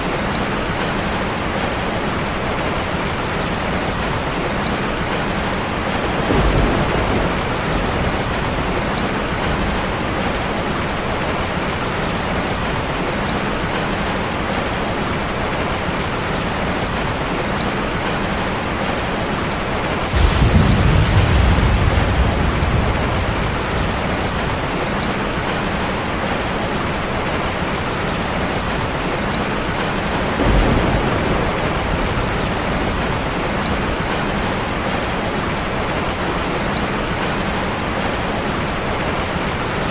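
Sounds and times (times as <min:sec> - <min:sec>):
heavy rain: 0:00.0 - 0:39.9
thunder rumbling: 0:05.1 - 0:13.1, 0:20.0 - 0:27.1, 0:27.9 - 0:36.4.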